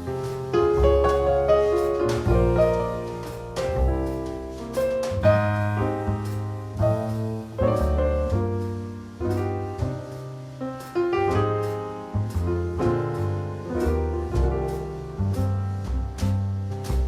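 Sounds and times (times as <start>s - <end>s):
piano playing chords: 0.0s - 17.0s.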